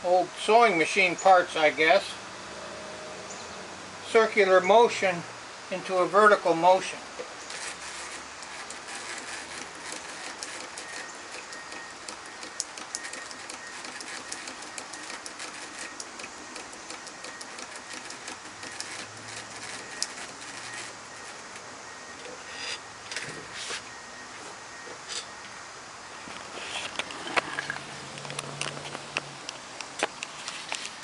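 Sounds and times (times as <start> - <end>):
pedal scroll saw rattling: 7.5 - 21.4.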